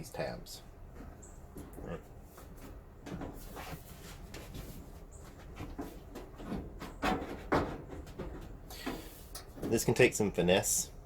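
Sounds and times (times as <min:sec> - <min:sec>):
sheet metal panel knocking: 0:06.2 - 0:08.6.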